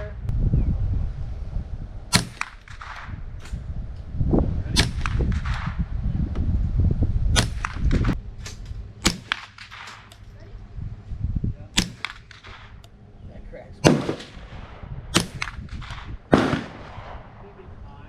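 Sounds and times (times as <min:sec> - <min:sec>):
low rumble: 0:00.0 - 0:18.0
rifle shots cracking: 0:02.1 - 0:03.6, 0:04.8 - 0:05.8, 0:07.4 - 0:10.3, 0:11.8 - 0:13.0, 0:13.8 - 0:17.4.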